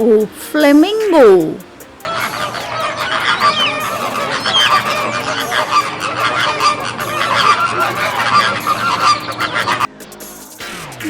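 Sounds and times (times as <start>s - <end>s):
flamingos honking: 2.0s - 9.9s.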